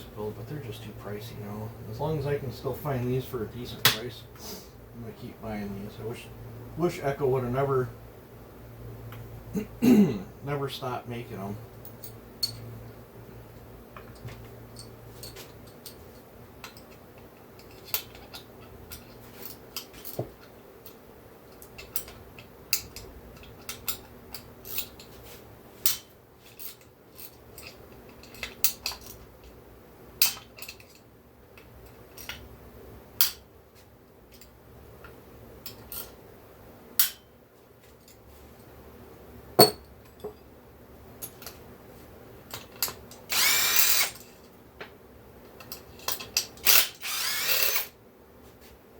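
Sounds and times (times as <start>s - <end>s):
metal tools clicking and tapping: 11.8s - 12.7s, 16.6s - 25.1s, 25.8s - 29.6s, 30.2s - 32.4s, 39.6s - 40.5s, 42.5s - 44.3s, 45.5s - 46.8s
power driver whirring: 43.2s - 44.2s, 46.6s - 47.9s.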